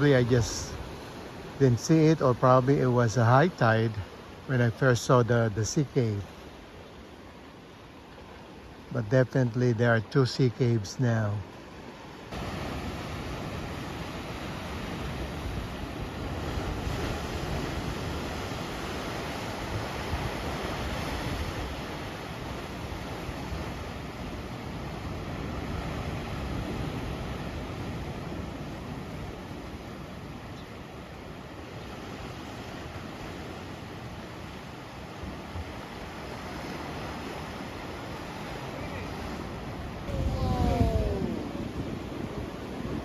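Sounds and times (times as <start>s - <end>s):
ocean waves: 0.0s - 43.0s
surf washing against rocks: 0.0s - 43.0s
wind rumbling on microphone: 38.8s - 43.0s.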